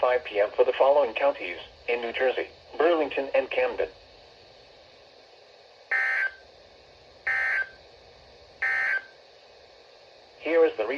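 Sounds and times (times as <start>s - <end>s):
buzzy two-tone data bursts: 5.9s - 6.4s, 7.3s - 7.8s, 8.6s - 9.1s.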